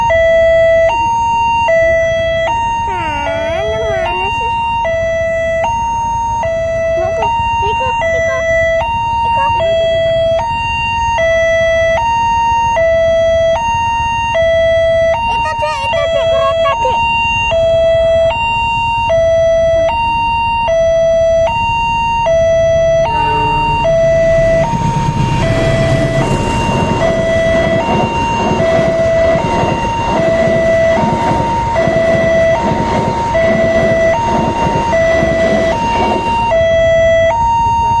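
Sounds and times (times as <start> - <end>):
two-tone crossing alarm: 0.0 - 38.0
loud rushing rumble: 22.8 - 37.0.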